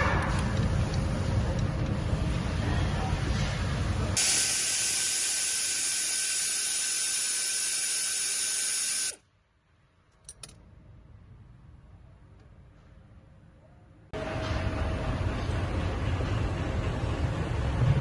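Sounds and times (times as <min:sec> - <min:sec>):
pressurised spray hissing: 0:04.2 - 0:09.2.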